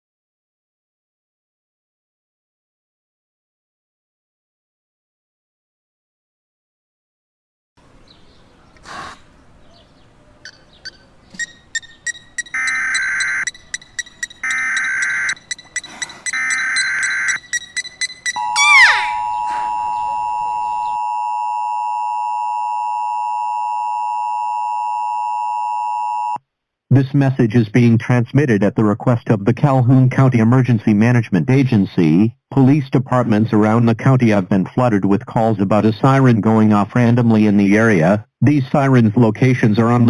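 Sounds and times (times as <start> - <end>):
whale clicks and whistles: 8.7 - 9.4, 10.4 - 21.0
screeching data bursts: 11.3 - 21.0
buzzing two-tone attention signal: 11.4 - 22.0
loud falling whistle: 16.1 - 21.0.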